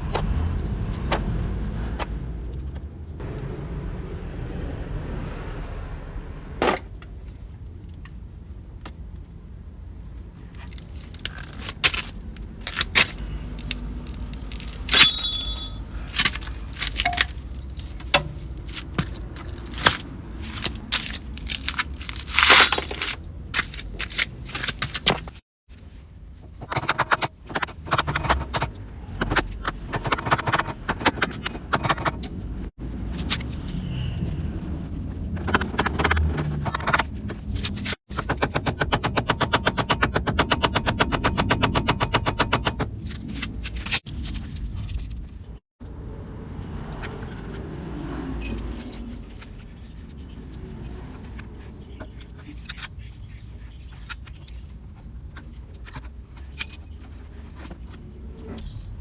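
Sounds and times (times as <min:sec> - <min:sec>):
metal tools clinking and scraping: 0:12.7 - 0:25.2, 0:48.3 - 0:53.0, 0:55.8 - 0:57.7
loud metallic rings: 0:14.9 - 0:16.0.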